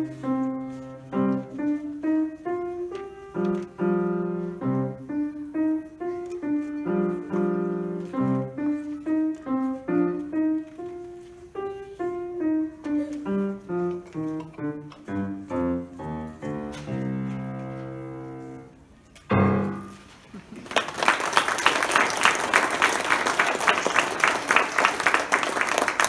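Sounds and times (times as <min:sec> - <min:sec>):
solo piano notes: 0:00.0 - 0:20.3.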